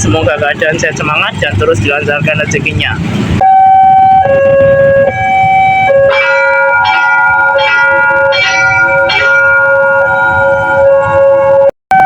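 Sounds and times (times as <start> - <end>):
two-note electronic alarm: 3.4 - 12.0
bell-like chime: 6.2 - 10.4.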